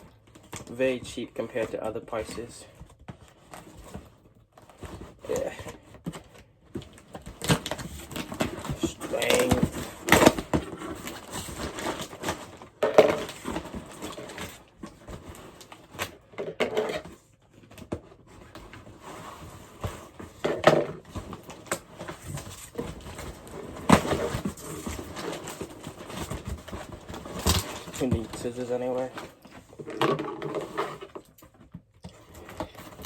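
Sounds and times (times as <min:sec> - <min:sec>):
packaging ripping and crinkling: 0:21.2 - 0:29.4.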